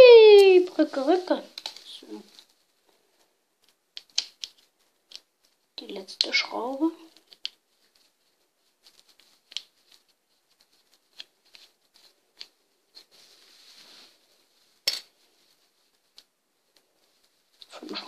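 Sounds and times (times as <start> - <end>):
soft scraping: 7.0 - 18.0.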